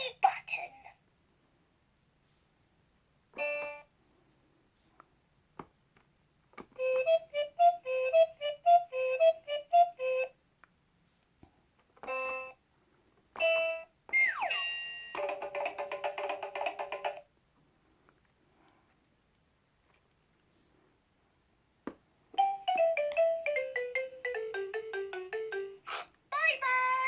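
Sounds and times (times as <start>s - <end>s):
electronic toy beeps: 13.4s - 15.3s
electronic toy tune: 22.4s - 25.8s.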